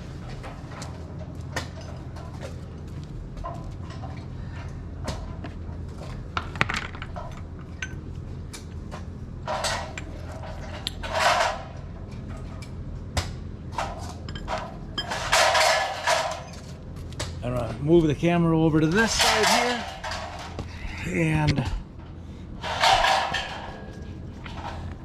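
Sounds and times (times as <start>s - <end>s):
steady low hum: 0.0s - 25.0s
tools clinking and knocking: 5.2s - 8.1s, 13.8s - 16.8s, 18.8s - 20.7s, 21.4s - 25.0s
scraping and rustling: 18.9s - 25.0s.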